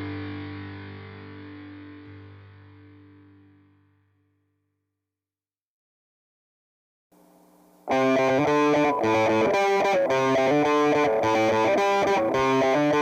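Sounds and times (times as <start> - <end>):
distorted electric guitar riff: 0.0 - 3.6, 7.8 - 13.0.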